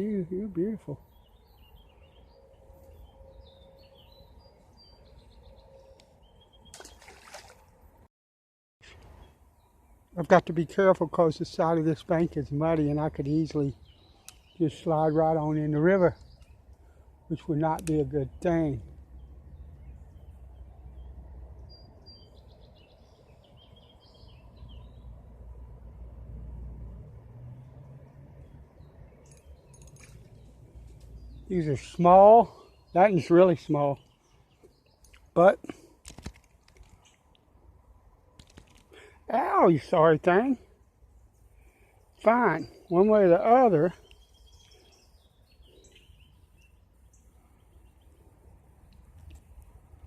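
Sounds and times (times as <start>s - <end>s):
birds chirping: 0.0s - 8.0s, 8.8s - 25.9s, 27.6s - 50.0s
brief rustling: 35.2s - 37.3s, 38.3s - 39.0s.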